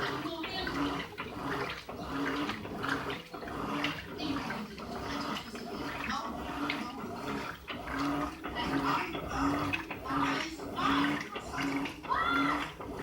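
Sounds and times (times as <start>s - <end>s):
washing machine motor hum: 0.0s - 13.0s
washing machine water sloshing: 0.0s - 13.0s.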